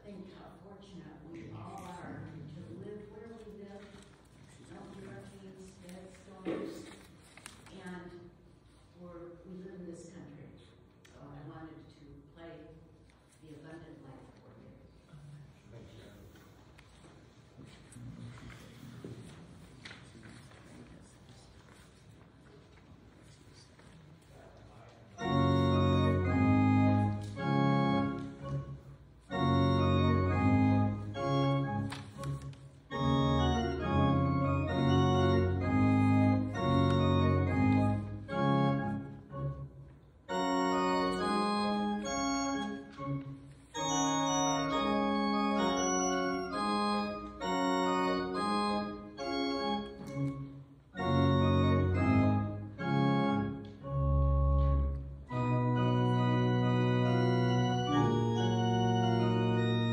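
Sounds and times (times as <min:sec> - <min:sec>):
church organ playing held chords: 0:25.2 - 0:59.9.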